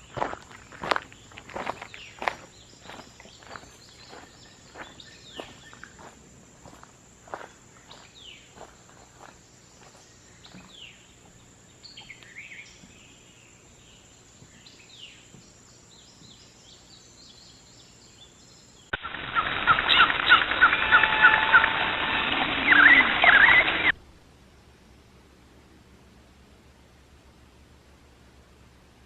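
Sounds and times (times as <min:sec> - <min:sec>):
sweeping bird calls: 0:00.0 - 0:06.2, 0:07.4 - 0:24.0
songbirds chirping faintly: 0:00.0 - 0:21.0.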